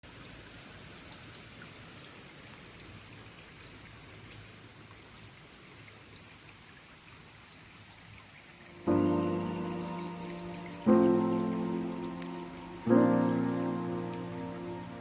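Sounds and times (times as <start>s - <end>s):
steady hiss: 8.6s - 15.0s
light ticks: 12.0s - 12.6s.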